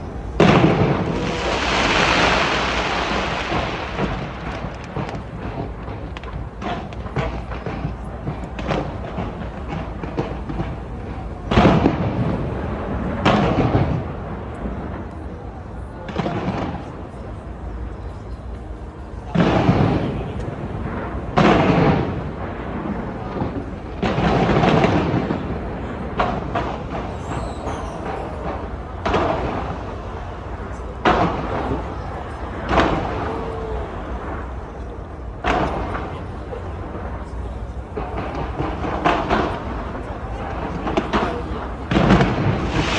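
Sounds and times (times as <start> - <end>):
fireworks booming: 0.0 - 42.9
fireworks crackling: 0.0 - 42.9.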